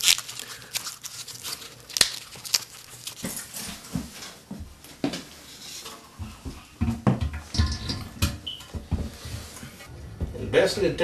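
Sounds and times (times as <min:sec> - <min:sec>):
toilet tank hardware clinking: 0:07.2 - 0:08.8.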